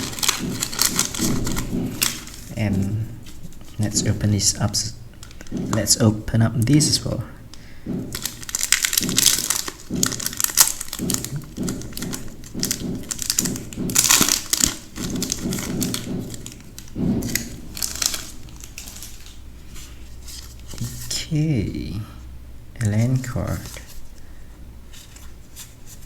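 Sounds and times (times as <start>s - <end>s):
foil wrapper crinkling: 0.0s - 4.2s, 8.1s - 21.1s.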